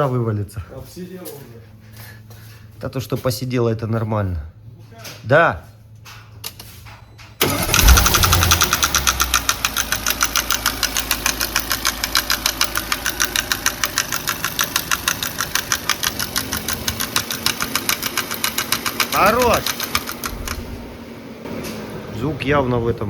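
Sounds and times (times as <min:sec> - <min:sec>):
rapid engine knocking: 0:07.4 - 0:20.6
car engine starting: 0:07.4 - 0:22.6.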